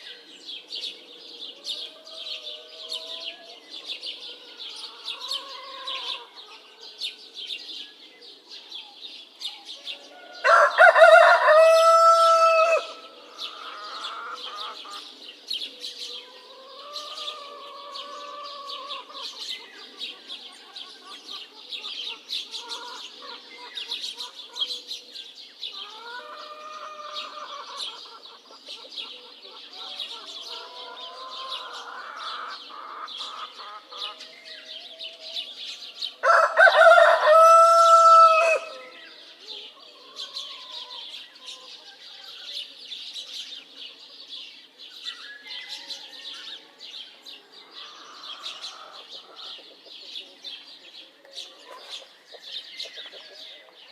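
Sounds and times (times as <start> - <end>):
small birds chirping: 0.0 - 53.9
chicken calls: 1.5 - 7.1, 9.8 - 25.1, 25.7 - 42.8, 43.6 - 53.9
rooster crowing: 10.0 - 14.7, 36.2 - 39.0.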